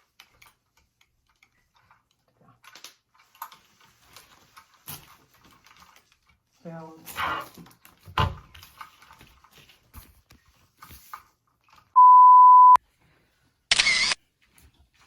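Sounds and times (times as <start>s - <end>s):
high pure tone beep: 12.0s - 12.8s.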